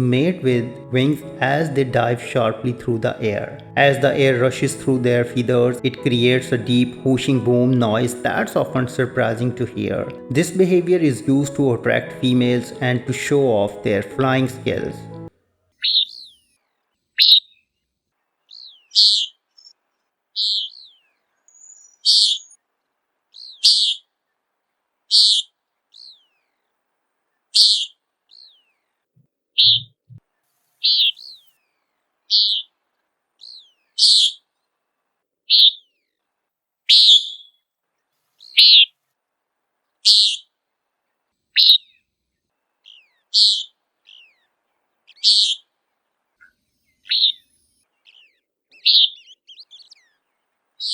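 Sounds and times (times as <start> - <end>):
nighthawk nasal peent call: 30.8 - 31.3, 32.3 - 32.7, 34.0 - 34.4, 38.4 - 38.9, 40.1 - 40.4, 43.4 - 43.7, 45.2 - 45.6, 47.1 - 47.4.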